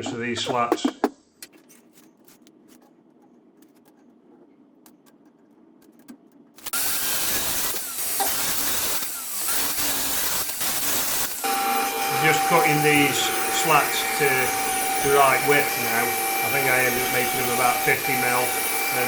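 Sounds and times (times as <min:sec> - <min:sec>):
faint clicks and knocks: 0:00.1 - 0:06.8
power saw cutting wood: 0:06.7 - 0:19.0.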